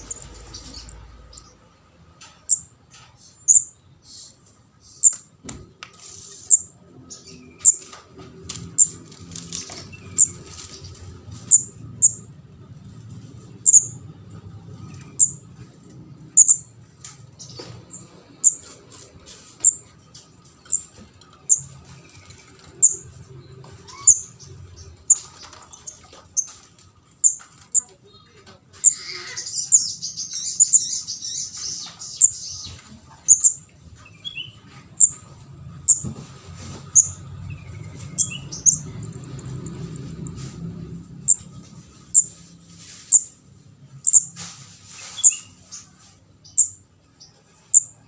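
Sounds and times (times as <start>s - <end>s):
young bird chirping: 0.0s - 1.6s, 2.4s - 5.3s, 6.3s - 12.3s, 13.6s - 14.0s, 14.9s - 15.6s, 16.3s - 16.7s, 17.4s - 19.9s, 20.6s - 28.0s, 28.8s - 36.1s, 36.8s - 39.8s, 41.2s - 43.4s, 44.0s - 44.4s, 45.0s - 48.0s.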